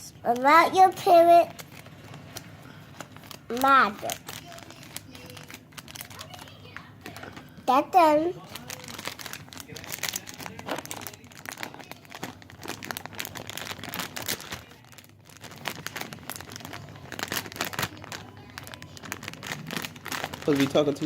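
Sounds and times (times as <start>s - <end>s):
plastic packaging crinkling: 0.2s - 21.0s.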